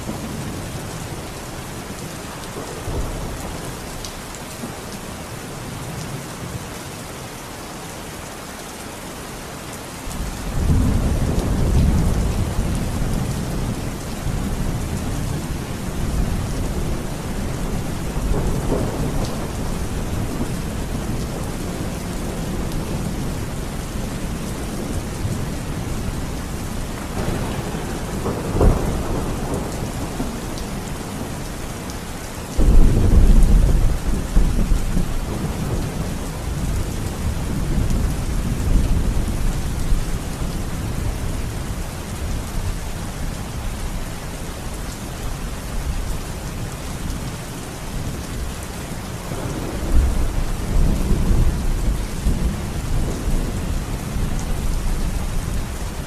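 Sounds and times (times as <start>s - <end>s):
heavy rain: 0.0s - 56.0s
deep rumble of thunder: 10.2s - 31.5s, 32.5s - 42.8s, 49.2s - 56.0s
thunder crack: 27.2s - 30.3s, 49.3s - 51.5s.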